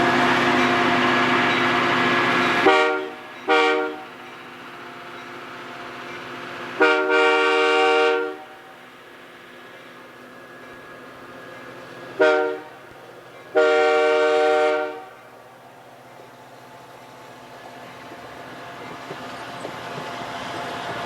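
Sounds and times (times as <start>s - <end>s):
locomotive air horn blasts: 0.0s - 4.2s, 6.8s - 8.8s, 12.2s - 12.9s, 13.5s - 15.4s
loud train noise: 0.0s - 21.0s.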